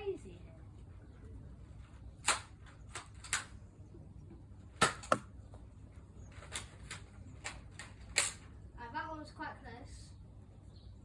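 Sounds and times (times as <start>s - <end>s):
foam dart blaster pop: 4.8s - 5.3s.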